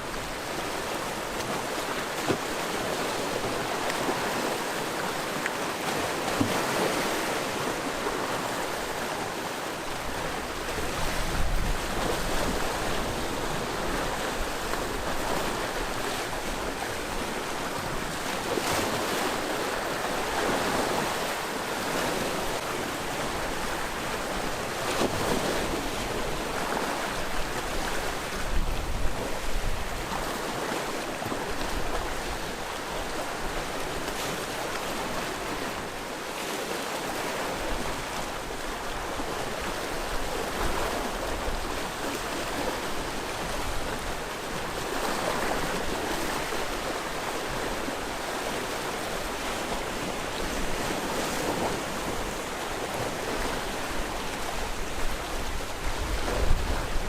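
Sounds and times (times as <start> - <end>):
sea waves breaking on shore: 0.0 - 57.0.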